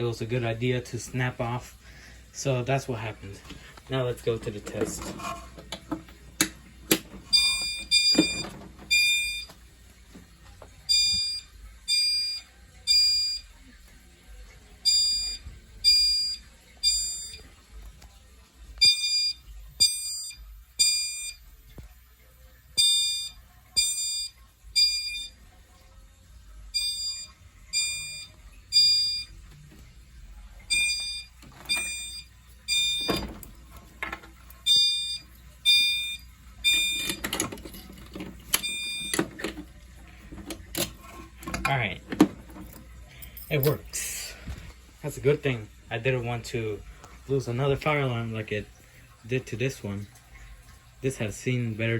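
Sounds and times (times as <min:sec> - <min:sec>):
fire alarm tones: 0:06.9 - 0:09.6, 0:10.8 - 0:13.7, 0:14.8 - 0:17.6, 0:18.8 - 0:21.9, 0:22.7 - 0:25.4, 0:26.7 - 0:29.6, 0:30.6 - 0:33.5, 0:34.6 - 0:39.6.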